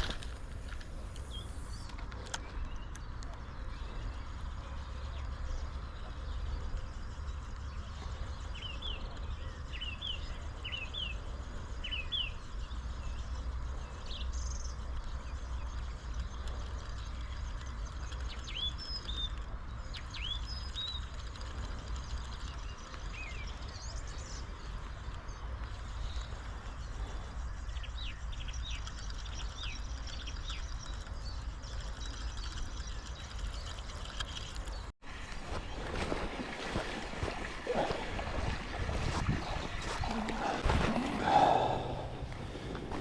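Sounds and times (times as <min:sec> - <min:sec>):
small birds chirping: 0:00.0 - 0:43.0
steady low rumble: 0:35.1 - 0:43.0.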